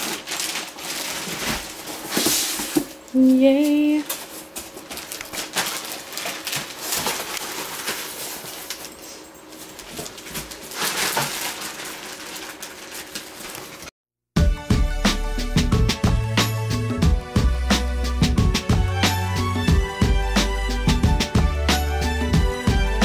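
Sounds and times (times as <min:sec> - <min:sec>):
packaging rustling and crinkling: 0:00.0 - 0:13.9.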